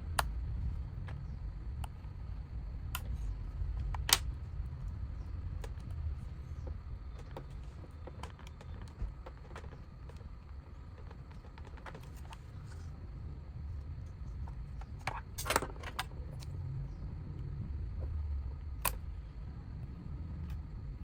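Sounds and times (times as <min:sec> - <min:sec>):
steady low hum: 0:00.0 - 0:21.0
rattling clicks: 0:05.6 - 0:12.8, 0:14.3 - 0:16.5.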